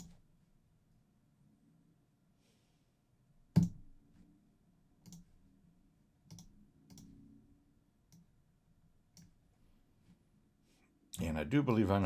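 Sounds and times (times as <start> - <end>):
computer mouse clicks: 5.0 - 5.3, 6.2 - 7.2.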